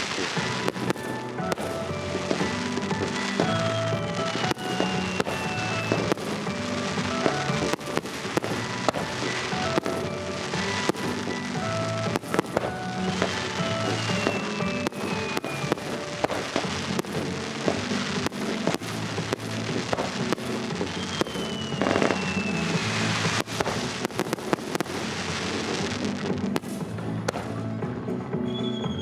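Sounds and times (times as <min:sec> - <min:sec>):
fireworks bursting: 0:00.0 - 0:29.0
music: 0:00.0 - 0:29.0
long falling whistle: 0:00.5 - 0:16.5, 0:20.9 - 0:23.1.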